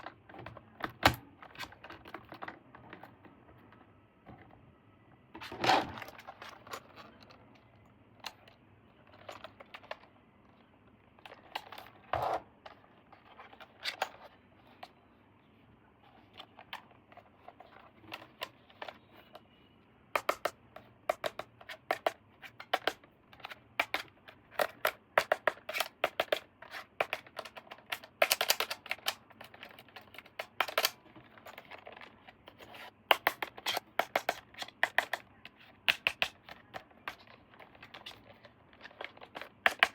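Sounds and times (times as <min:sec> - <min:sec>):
plastic toy parts clicking: 0:20.2 - 0:39.9.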